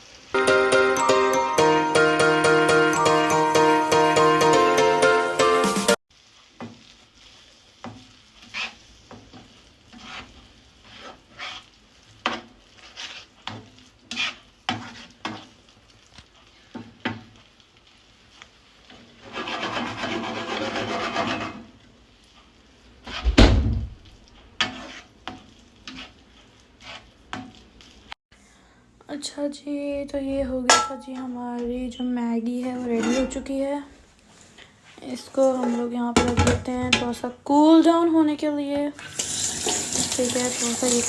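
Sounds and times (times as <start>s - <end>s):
utensil scraping cooking pan: 6.2s - 23.5s, 24.1s - 28.2s, 32.5s - 33.7s, 34.6s - 36.4s, 39.0s - 41.0s
loud thump: 23.3s - 23.9s.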